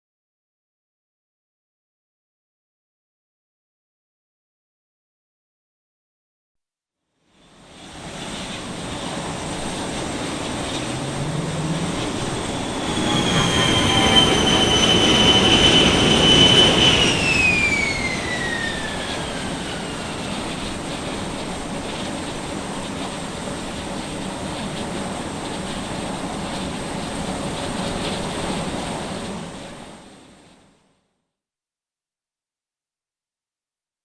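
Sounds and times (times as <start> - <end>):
high turbine whine: 7.5 - 30.4
jet engine roar: 7.5 - 30.6.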